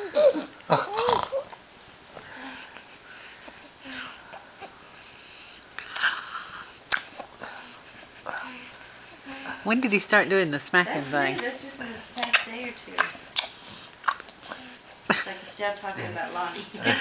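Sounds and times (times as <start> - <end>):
baby breathy vocal noises: 2.2 - 9.8, 13.2 - 15.0
baby smacking lips: 5.6 - 8.0, 11.3 - 11.6, 12.2 - 14.7.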